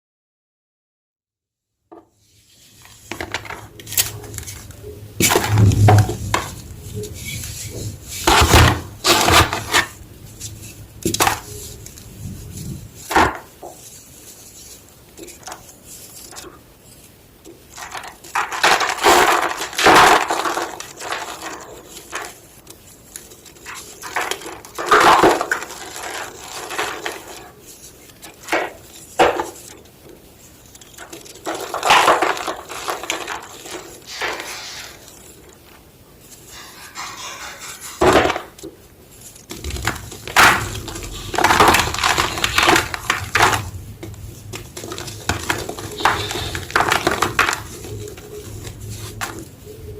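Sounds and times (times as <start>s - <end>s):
chalk block being crushed: 7.2s - 10.0s, 13.0s - 14.6s, 17.7s - 29.8s, 30.6s - 35.3s, 39.4s - 43.8s, 44.4s - 49.5s.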